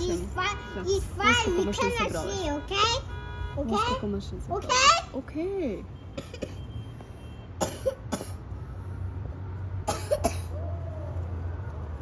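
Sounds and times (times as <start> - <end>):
person coughing: 6.2 - 6.6, 7.6 - 8.4, 9.9 - 10.6.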